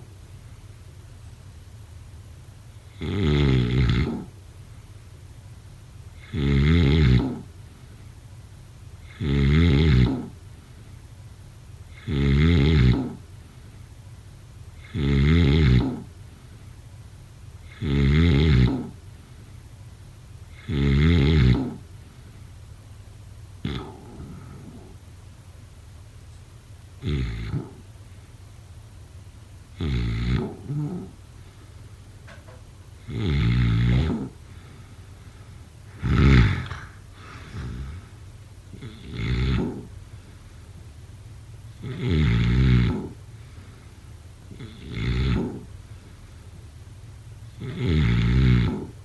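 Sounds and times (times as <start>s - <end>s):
person snoring: 3.0s - 4.3s, 6.2s - 7.5s, 9.0s - 10.4s, 11.9s - 13.2s, 14.8s - 16.1s, 17.6s - 19.0s, 20.5s - 21.9s, 23.6s - 25.0s, 27.0s - 27.8s, 29.8s - 31.2s, 33.0s - 35.0s, 35.9s - 40.2s, 41.8s - 43.2s, 44.5s - 45.8s, 47.6s - 49.0s.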